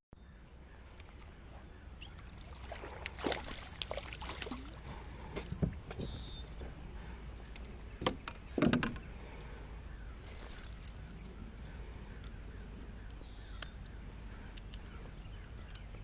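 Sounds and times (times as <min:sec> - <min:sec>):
faint water sounds: 0:00.2 - 0:16.0
light clicks and knocks of gear: 0:03.0 - 0:06.8, 0:10.2 - 0:16.0.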